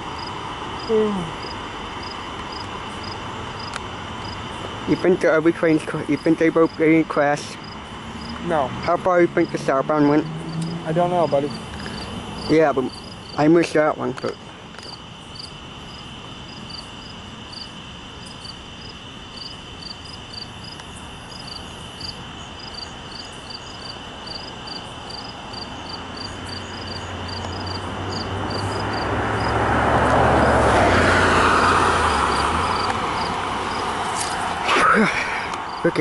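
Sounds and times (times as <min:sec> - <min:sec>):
crickets chirping: 0:00.0 - 0:36.0
passing motor vehicle engine: 0:07.6 - 0:13.4, 0:23.4 - 0:36.0.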